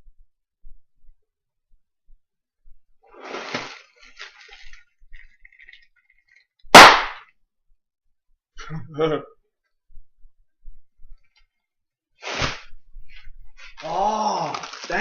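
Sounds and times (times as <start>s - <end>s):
bubble wrap crackling: 3.2s - 6.4s, 13.7s - 15.0s
bubble wrap pop: 6.7s - 7.2s, 12.2s - 12.7s.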